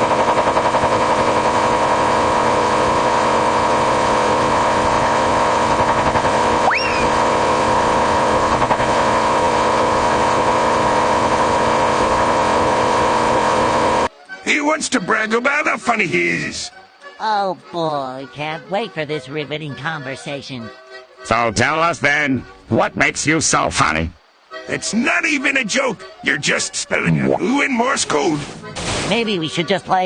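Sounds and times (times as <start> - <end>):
upward-sliding chirp: 6.6 - 7.2
buzzing morse code beeping: 21.2 - 29.8.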